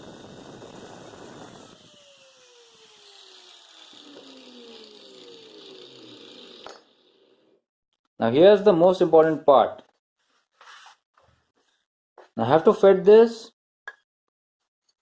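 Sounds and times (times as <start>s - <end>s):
electric grinder spinning down: 0.0s - 7.6s.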